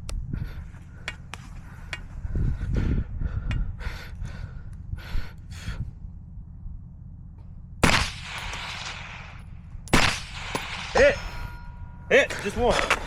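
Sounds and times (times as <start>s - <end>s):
rifle shot: 7.8s - 11.7s
sharp bang: 7.8s - 13.0s.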